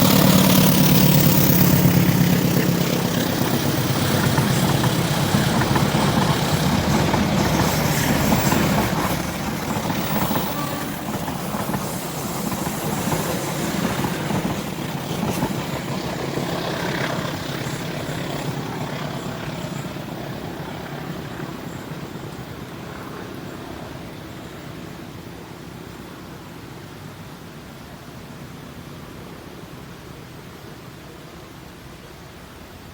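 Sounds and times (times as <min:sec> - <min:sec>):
diesel train engine rumble: 0:00.0 - 0:22.6
wheels on rails: 0:00.0 - 0:24.1.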